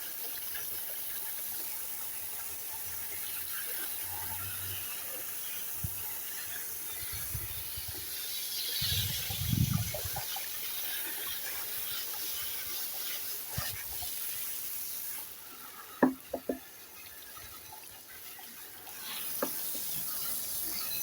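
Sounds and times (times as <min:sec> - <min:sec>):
water spraying hiss: 0:00.0 - 0:21.0.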